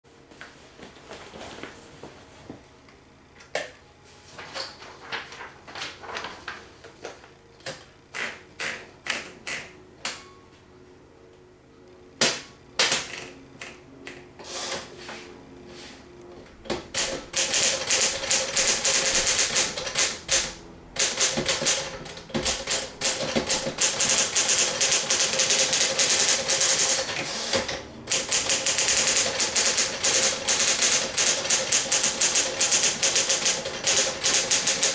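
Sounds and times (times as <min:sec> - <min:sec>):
manual typewriter typing: 0:16.7 - 0:34.9.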